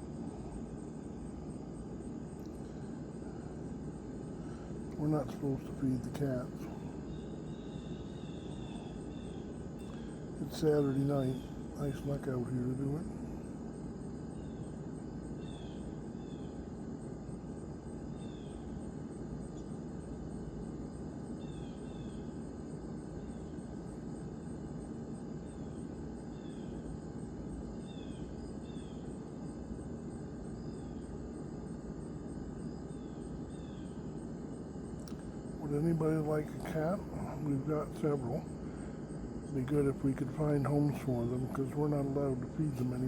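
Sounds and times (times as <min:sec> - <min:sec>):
steady low rumble: 0:34.8 - 0:43.0.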